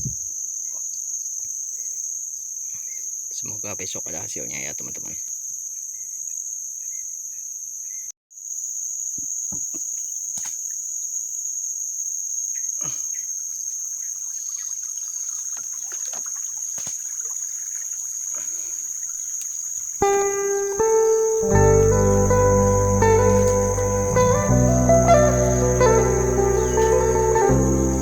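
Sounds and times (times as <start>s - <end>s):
high-pitched insect chorus: 0.3s - 28.0s
guitar music: 20.0s - 28.0s.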